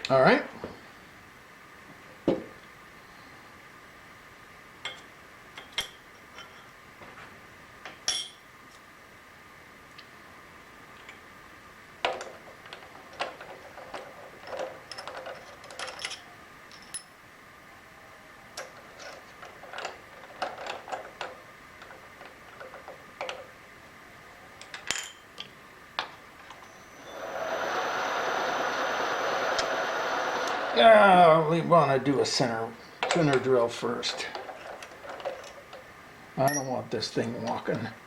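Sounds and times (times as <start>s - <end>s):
machine running: 26.5s - 32.5s.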